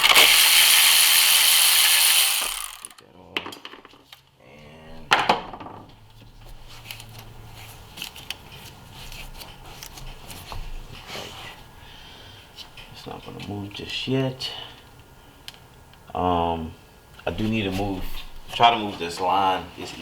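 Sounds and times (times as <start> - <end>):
ratchet wrench clicking: 0.0 - 3.0.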